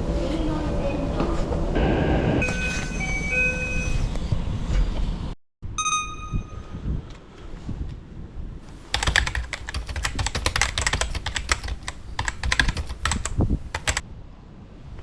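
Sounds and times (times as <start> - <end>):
sharp clicks and clacks: 8.7 - 14.0.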